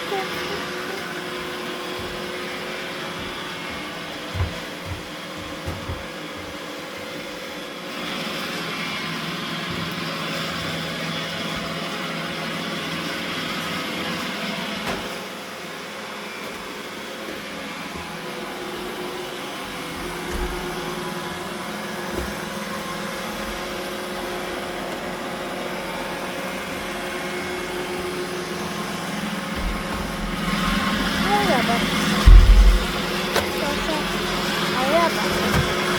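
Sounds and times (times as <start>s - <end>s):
robot vacuum motor hum: 16.0s - 35.9s.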